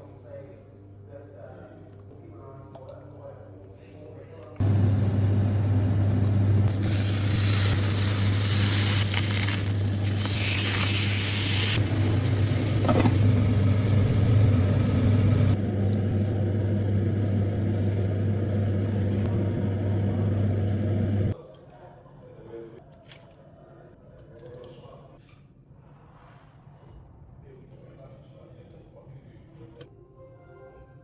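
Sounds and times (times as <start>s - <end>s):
steady low hum: 4.6s - 21.4s
food sizzling in a hot pan: 6.7s - 12.9s.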